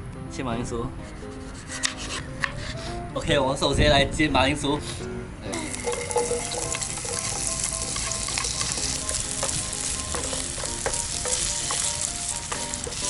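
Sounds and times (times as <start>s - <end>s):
potatoes sizzling in a pan: 5.5s - 13.0s.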